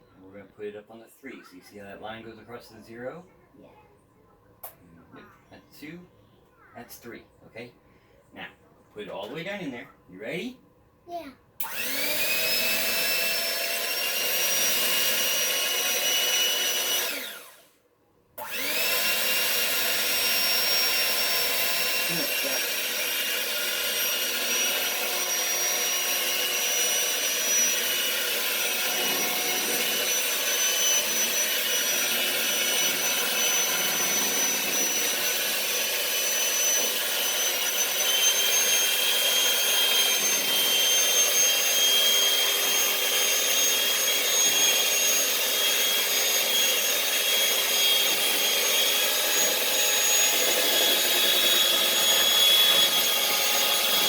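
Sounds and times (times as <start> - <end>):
electric hand mixer whining: 11.6 - 17.7, 18.4 - 54.0.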